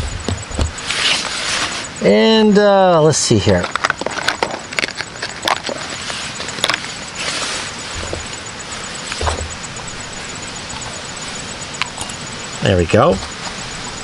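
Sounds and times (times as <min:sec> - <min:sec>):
low thumps: 0:00.0 - 0:00.8, 0:07.9 - 0:10.4
rustle: 0:00.0 - 0:14.0.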